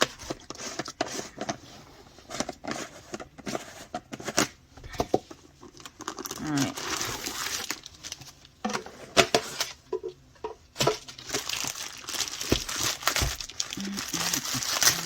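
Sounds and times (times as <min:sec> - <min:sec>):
packaging crinkling and tearing: 0:05.6 - 0:08.6, 0:10.8 - 0:15.0.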